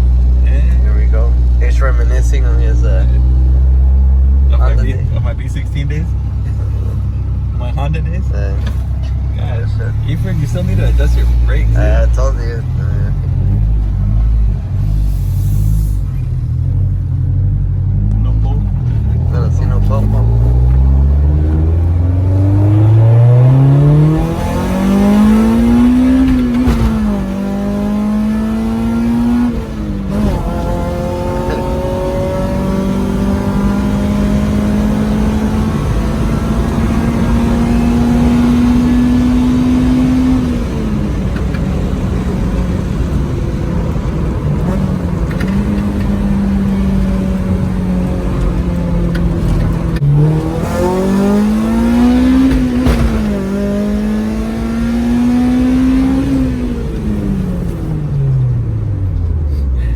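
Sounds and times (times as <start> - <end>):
car engine accelerating hard: 0.0 - 59.9.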